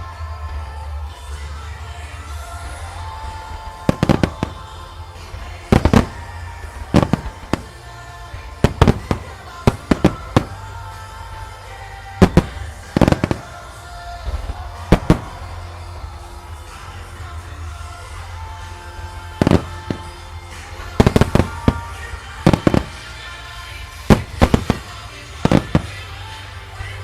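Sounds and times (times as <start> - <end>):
music: 0.0 - 27.0
fireworks bursting: 2.6 - 17.2, 18.1 - 27.0.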